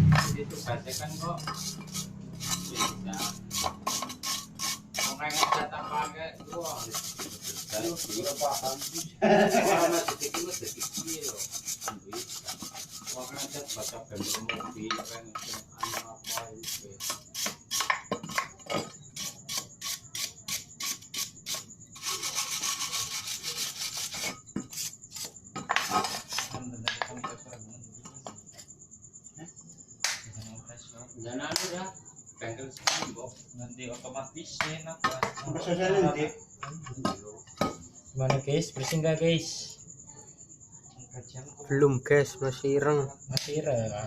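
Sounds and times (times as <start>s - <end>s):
scrubbing engine parts: 0.0s - 26.6s.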